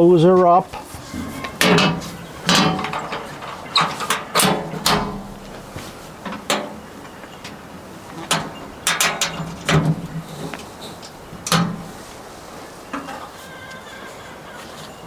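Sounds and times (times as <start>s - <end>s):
metal covers knocking shut: 0.8s - 12.3s.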